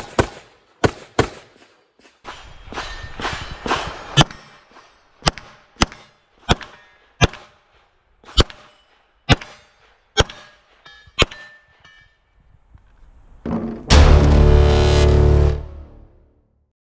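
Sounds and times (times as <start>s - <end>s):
rifle shots: 0.0s - 1.7s.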